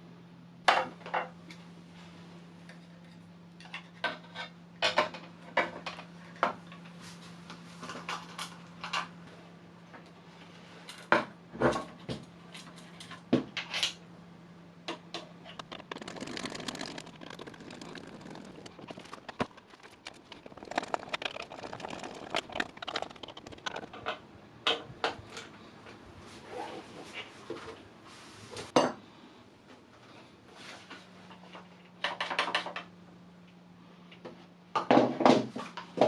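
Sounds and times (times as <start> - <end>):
small parts and tools clattering: 14.9 - 25.5.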